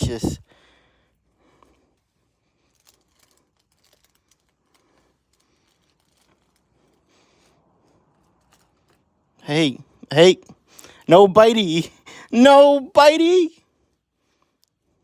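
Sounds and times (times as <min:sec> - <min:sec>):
crinkling rustles on plastic pad: 0:01.6 - 0:09.4.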